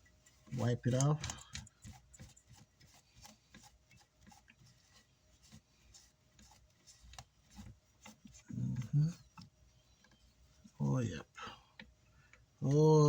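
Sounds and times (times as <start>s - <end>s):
cloth rubbing and wiping: 0.0s - 13.0s
short hum-like voice: 8.5s - 9.2s.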